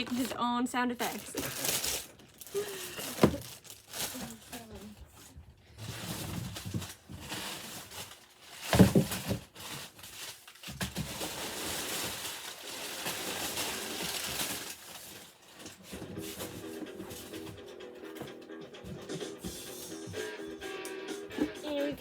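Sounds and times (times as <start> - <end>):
packaging rustling and tearing: 0.0 - 17.6.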